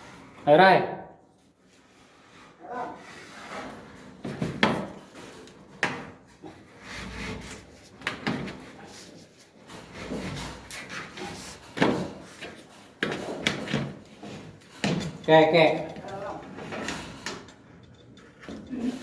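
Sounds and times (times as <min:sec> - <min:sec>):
scraping rubs: 0:01.9 - 0:04.1, 0:06.4 - 0:19.0
handling noises: 0:07.2 - 0:19.0.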